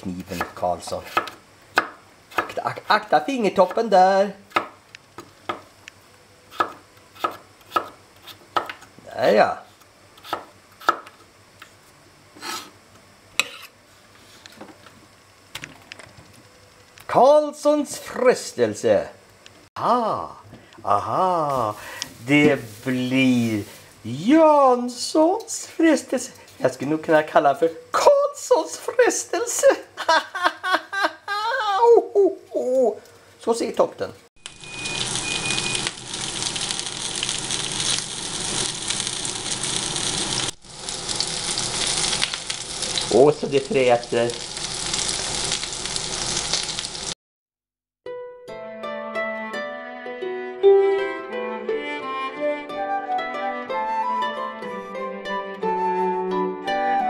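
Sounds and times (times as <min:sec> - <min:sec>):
knife scraping rasp: 0:12.4 - 0:12.7
food sizzling in pan: 0:34.4 - 0:47.2.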